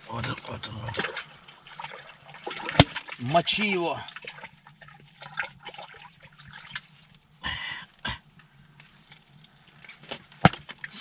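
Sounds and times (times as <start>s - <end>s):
water splashing and trickling: 0.0s - 7.3s.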